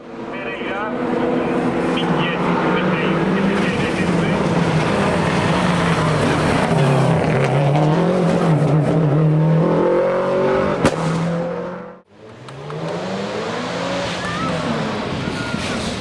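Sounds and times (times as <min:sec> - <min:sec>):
race car engine at full throttle: 0:00.0 - 0:16.0
second race car engine: 0:00.0 - 0:16.0
sharp crack: 0:10.8 - 0:11.6.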